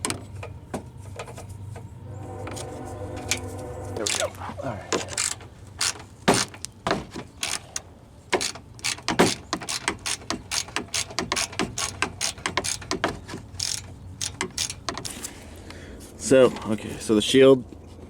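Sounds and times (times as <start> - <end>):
hand ratchet clicking: 5.0 - 6.8, 7.4 - 15.2.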